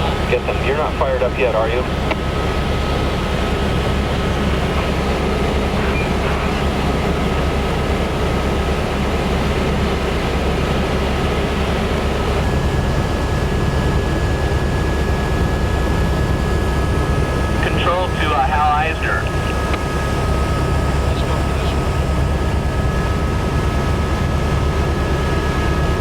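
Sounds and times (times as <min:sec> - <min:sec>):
helicopter engine and rotor drone: 0:00.0 - 0:26.0
high whine tone: 0:15.4 - 0:26.0.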